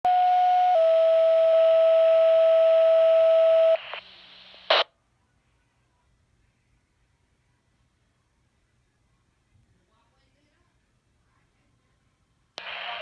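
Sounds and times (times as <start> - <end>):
radio static hiss: 3.7 - 4.9, 12.6 - 13.0.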